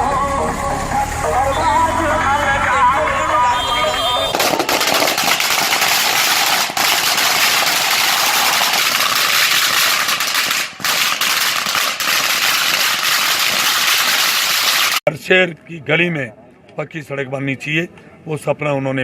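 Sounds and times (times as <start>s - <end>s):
firecrackers crackling: 2.1s - 15.0s.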